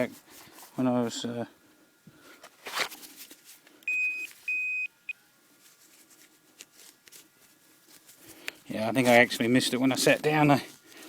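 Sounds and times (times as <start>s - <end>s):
short rustle: 2.2s - 4.6s, 5.5s - 11.0s
pinpointer high beeps: 3.9s - 5.0s.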